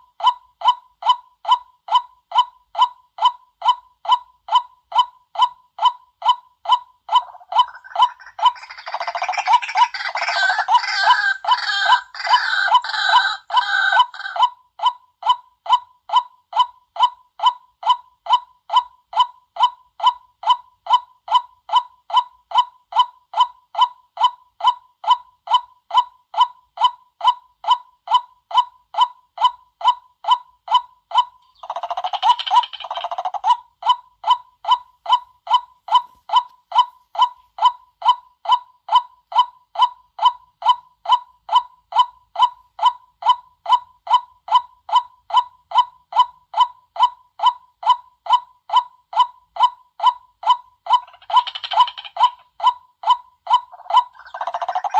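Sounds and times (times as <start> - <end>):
waterhen kwak calls: 7.1 - 14.5, 50.9 - 52.4, 53.6 - 54.9
harsh chattering bird calls: 7.2 - 14.4, 31.4 - 33.5, 51.0 - 52.4, 53.7 - 54.9.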